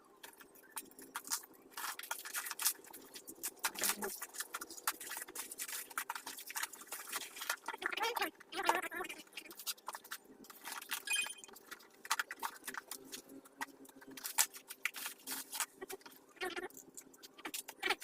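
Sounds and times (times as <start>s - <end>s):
box and packaging handled: 9.6s - 17.7s.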